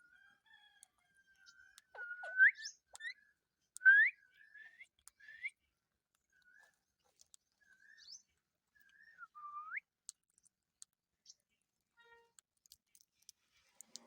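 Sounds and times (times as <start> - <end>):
parrot call: 1.8 - 3.2
parrot whistling: 1.9 - 3.1
soft clicks: 12.4 - 14.0.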